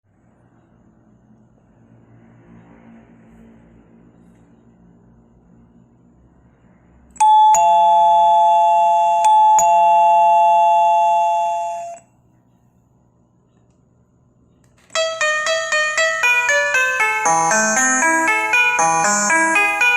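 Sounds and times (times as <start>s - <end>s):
doorbell chime ding-dong: 7.2s - 12.0s, 15.0s - 19.9s
fast doorbell melody: 7.2s - 12.0s, 15.0s - 19.9s.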